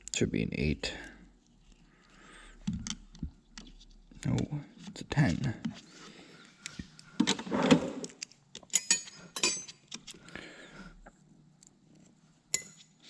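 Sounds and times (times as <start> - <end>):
metal tools clinking: 8.7 - 9.8.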